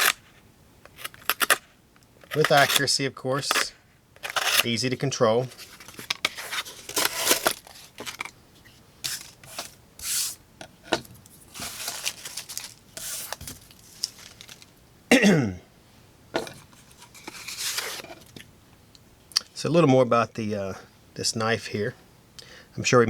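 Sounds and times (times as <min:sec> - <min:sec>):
knife slicing into cardboard: 0:02.3 - 0:02.8, 0:03.4 - 0:04.7, 0:09.1 - 0:10.4, 0:11.5 - 0:13.6.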